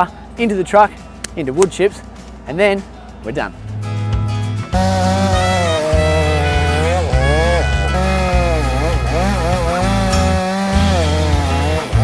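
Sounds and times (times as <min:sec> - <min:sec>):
background music with bass line: 0:03.1 - 0:12.0
chainsaw cutting wood: 0:04.7 - 0:12.0.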